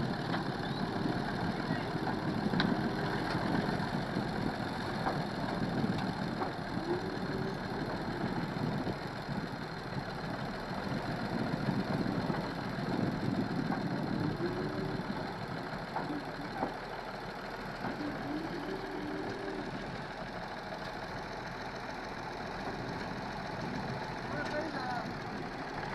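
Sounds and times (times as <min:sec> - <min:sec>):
bulldozer diesel engine running: 0:00.0 - 0:25.9.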